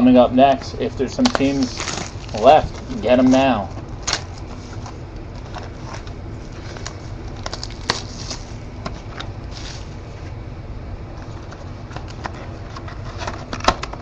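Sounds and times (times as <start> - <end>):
steady low hum: 0.0 - 14.0
wrapper crinkling: 1.2 - 8.6
cards clicking and rustling: 1.2 - 9.8.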